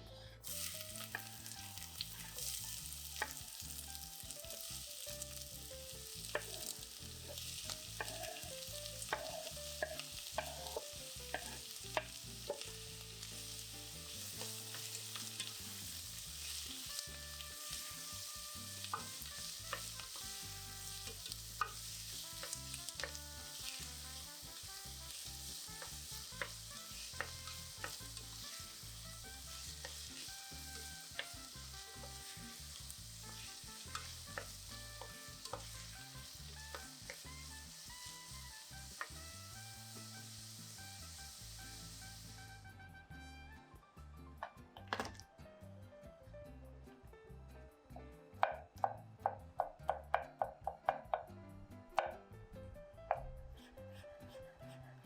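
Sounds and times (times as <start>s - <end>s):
utensil scraping a pan: 0.4s - 42.2s
food sizzling in oil: 0.4s - 42.8s.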